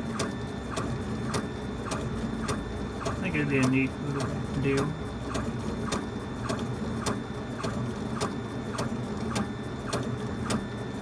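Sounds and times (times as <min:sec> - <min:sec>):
laser engraver hum: 0:00.0 - 0:11.0
engraver head ticking: 0:02.5 - 0:06.0.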